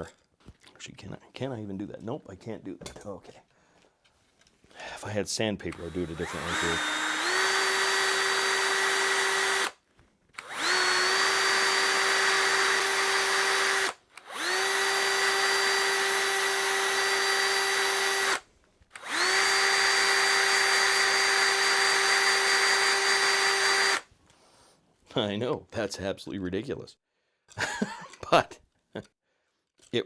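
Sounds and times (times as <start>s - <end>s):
electric drill whining: 5.7s - 9.8s, 10.4s - 24.1s.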